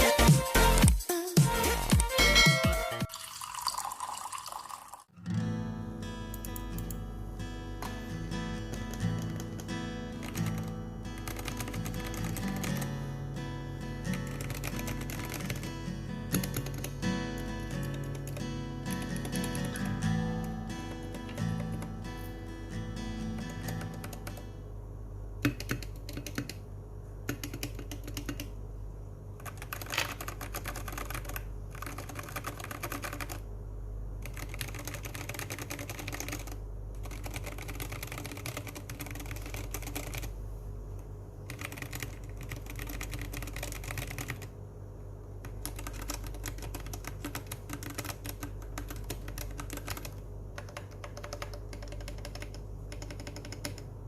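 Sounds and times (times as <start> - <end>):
mechanical keyboard typing: 8.6 - 12.9, 14.1 - 17.0, 17.6 - 20.0, 20.9 - 21.9, 23.4 - 24.5, 25.4 - 26.6, 27.3 - 28.5, 29.4 - 33.4, 34.2 - 40.3, 41.5 - 44.5, 45.4 - 53.9.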